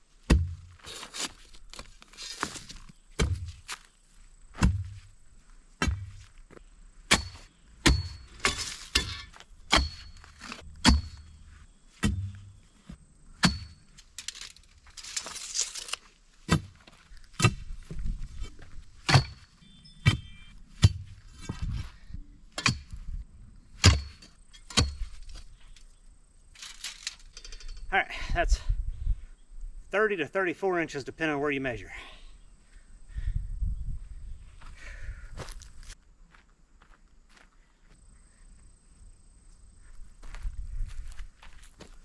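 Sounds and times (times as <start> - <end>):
steel tool striking rocky soil: 7.1 - 11.4, 12.0 - 12.6, 13.4 - 16.8, 17.4 - 17.7, 18.4 - 21.7, 22.6 - 23.0, 23.8 - 25.4.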